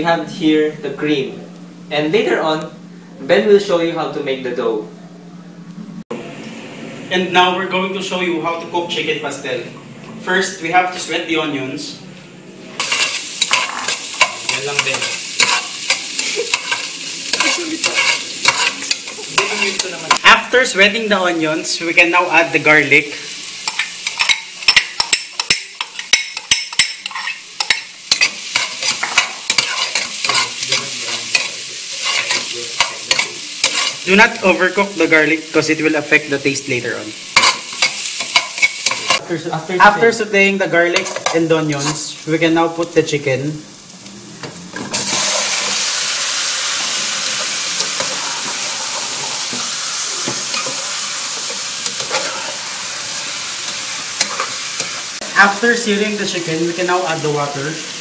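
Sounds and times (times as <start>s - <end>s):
garlic and onions sizzling: 12.4s - 58.0s
utensil scraping a pan: 12.8s - 20.2s, 23.6s - 34.1s, 37.4s - 39.2s, 41.0s - 42.1s, 47.4s - 55.1s.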